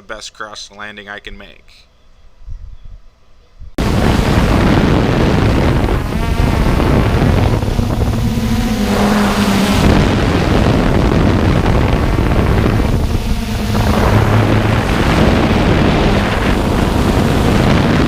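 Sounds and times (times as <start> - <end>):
wind buffeting microphone: 2.4 - 18.0
quadcopter propellers whirring: 3.8 - 18.0
steady low hum: 3.8 - 18.0.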